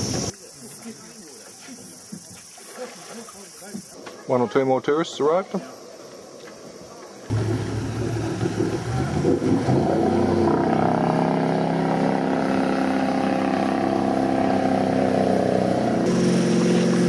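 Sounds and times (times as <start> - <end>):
boat engine running: 7.3 - 17.0.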